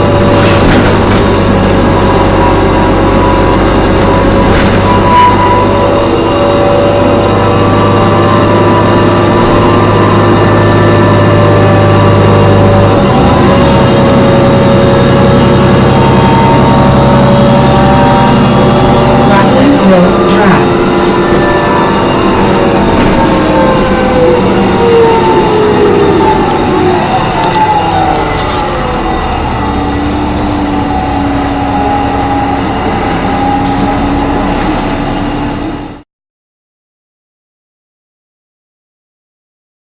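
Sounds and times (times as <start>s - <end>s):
low bus engine note: 0.0s - 36.0s
high-pitched multi-tone screech: 16.2s - 34.8s.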